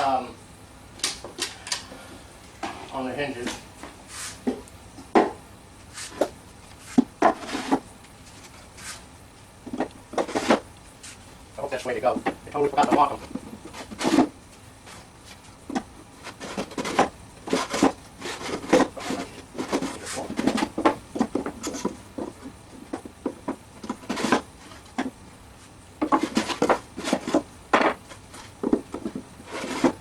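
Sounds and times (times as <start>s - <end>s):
wooden drawers sliding and knocking: 15.7s - 25.1s, 26.0s - 30.0s.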